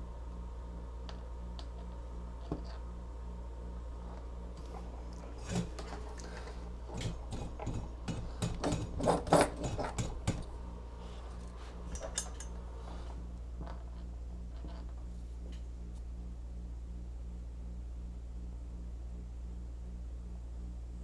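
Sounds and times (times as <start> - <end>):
low steady hum: 0.0 - 21.0
small tools clinking: 11.4 - 12.6.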